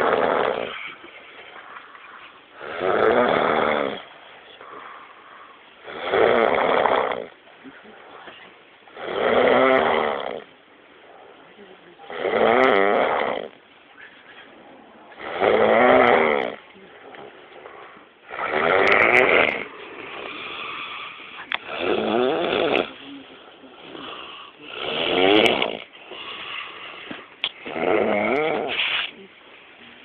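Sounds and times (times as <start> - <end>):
quiet breathing: 0.0 - 9.1, 10.1 - 30.0
person snoring loudly: 2.6 - 4.1, 5.8 - 7.4, 9.0 - 10.5, 12.1 - 13.6, 15.2 - 16.6, 18.3 - 23.0, 23.8 - 26.4, 27.6 - 28.8.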